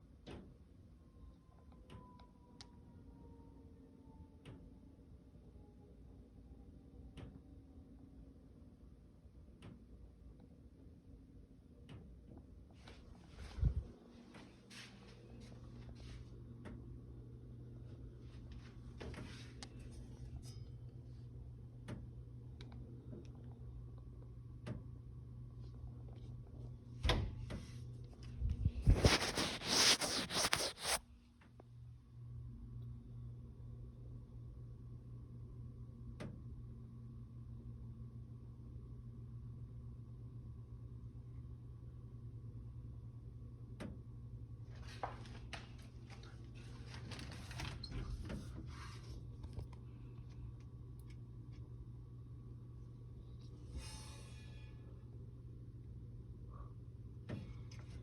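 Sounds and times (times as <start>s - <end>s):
low steady hum: 0.0s - 58.0s
scraping rustling sound: 28.6s - 31.0s, 44.7s - 49.6s.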